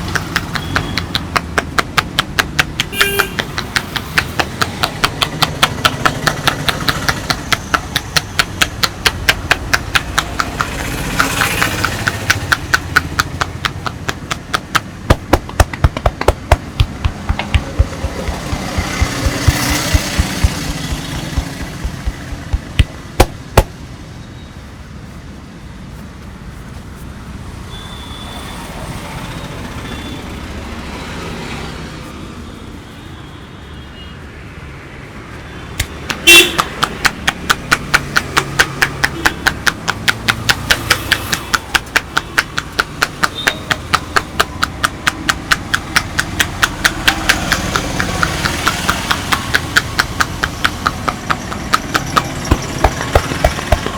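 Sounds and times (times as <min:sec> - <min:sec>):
hand slapping a back: 0:00.0 - 0:23.8, 0:35.8 - 0:51.4, 0:52.5 - 0:53.9
street traffic noise: 0:00.0 - 0:53.9.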